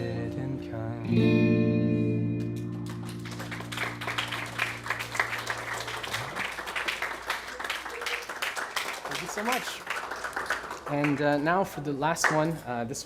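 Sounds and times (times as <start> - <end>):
audience clapping: 2.4 - 12.6.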